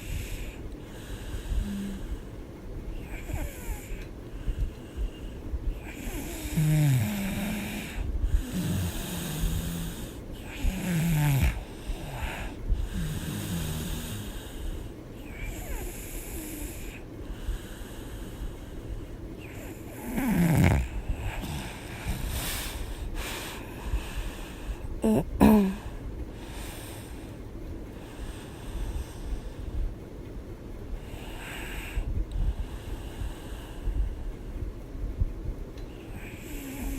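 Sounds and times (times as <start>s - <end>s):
woman snoring heavily: 0.0s - 2.3s, 3.0s - 4.1s, 5.8s - 14.6s, 15.3s - 17.0s, 19.4s - 27.2s, 36.1s - 36.9s.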